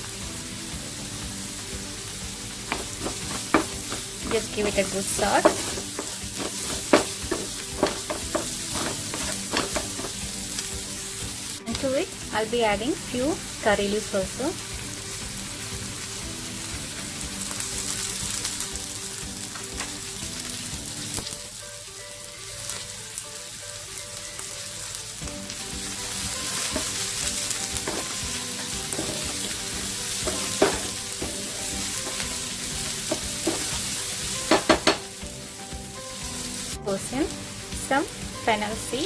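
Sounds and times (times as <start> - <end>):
onions sizzling in oil: 0.0 - 39.0
spoon stirring against pan: 2.5 - 10.7, 25.9 - 35.1.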